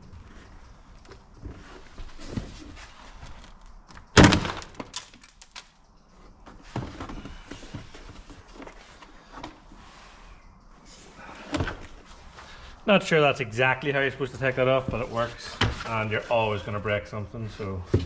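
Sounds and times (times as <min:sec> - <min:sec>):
plastic clips cracking: 0:03.3 - 0:05.8
plastic snaps and knocks: 0:04.2 - 0:05.7.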